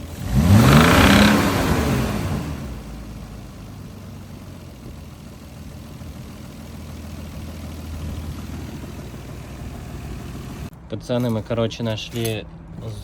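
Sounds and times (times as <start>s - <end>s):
car engine idling with knock: 3.0s - 10.7s.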